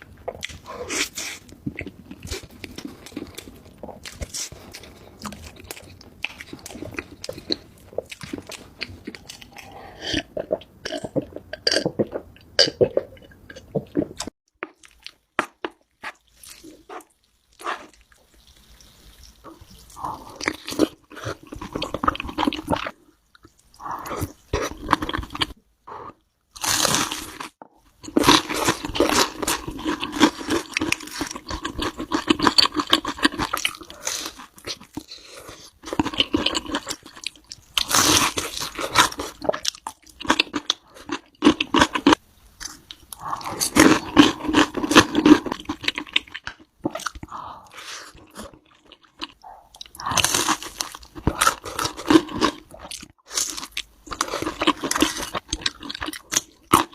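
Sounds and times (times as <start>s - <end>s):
crunchy biting and chewing: 26.5s - 56.9s.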